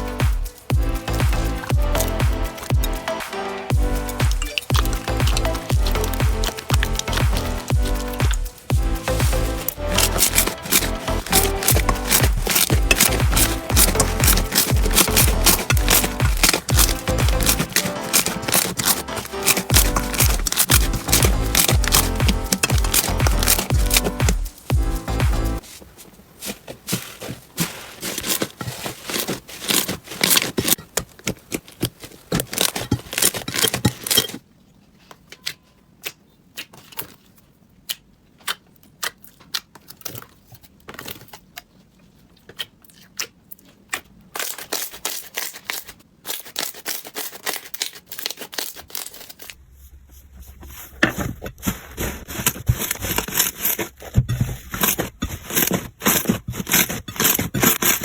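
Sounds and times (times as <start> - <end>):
slime crackling and popping: 4.1 - 25.6, 26.9 - 34.4.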